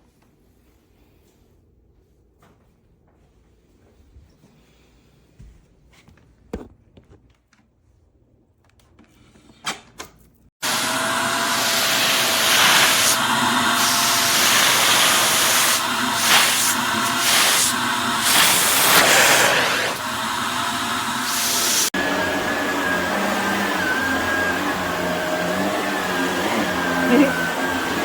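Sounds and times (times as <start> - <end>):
upright vacuum running: 10.6 - 28.0.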